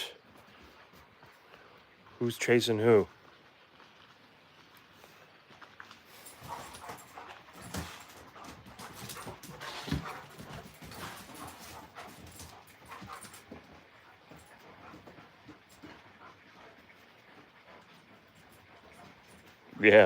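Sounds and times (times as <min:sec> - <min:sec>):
dogs scuffling: 0:05.6 - 0:20.0
dog vocal noises: 0:06.1 - 0:19.8.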